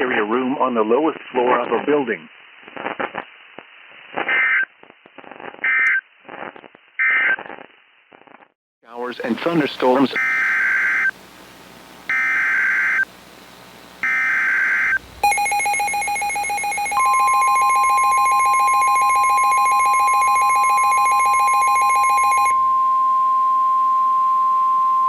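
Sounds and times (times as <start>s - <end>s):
screechy digital data bursts: 12.1s - 13.1s, 14.0s - 22.5s
steady warning alarm tone: 14.0s - 23.6s.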